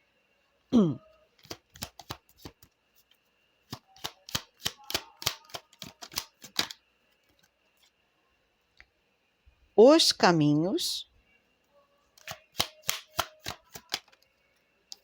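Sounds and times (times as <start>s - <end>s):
cards shuffling and snapping: 1.4s - 3.1s, 3.7s - 7.5s, 12.2s - 14.2s.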